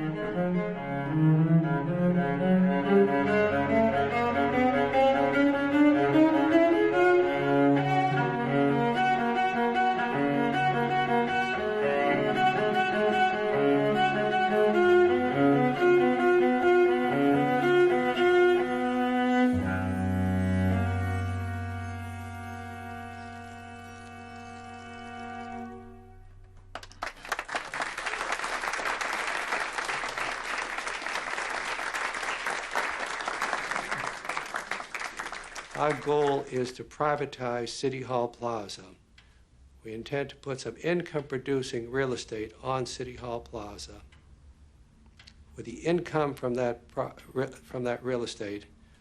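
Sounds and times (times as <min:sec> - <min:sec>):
slow bowed string music: 0:00.0 - 0:26.8
audience applause: 0:26.7 - 0:36.6.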